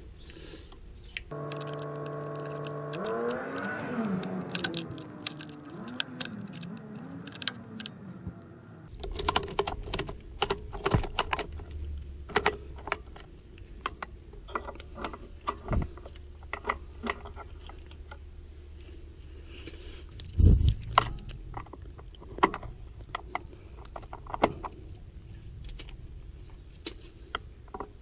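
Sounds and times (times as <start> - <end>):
low steady hum: 0.0 - 9.0.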